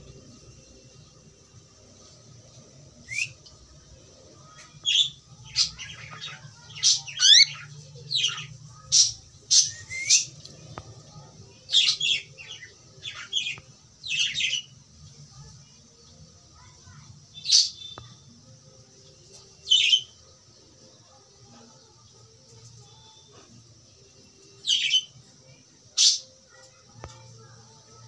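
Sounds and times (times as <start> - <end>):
cockatiel chirps and squawks: 7.2 - 7.6.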